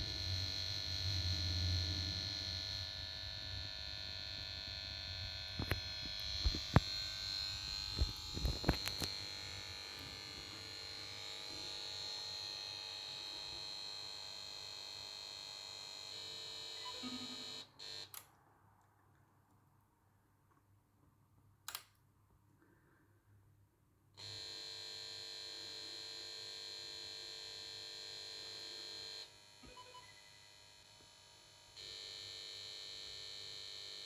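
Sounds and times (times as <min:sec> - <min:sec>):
low electrical hum: 0:00.0 - 0:12.6
high-pitched electrical whine: 0:00.0 - 0:14.9.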